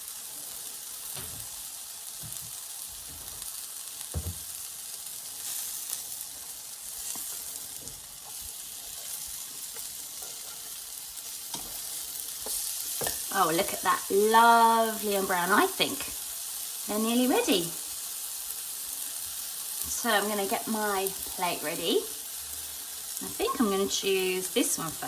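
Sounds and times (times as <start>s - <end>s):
pancakes sizzling in oil: 0.0s - 25.0s.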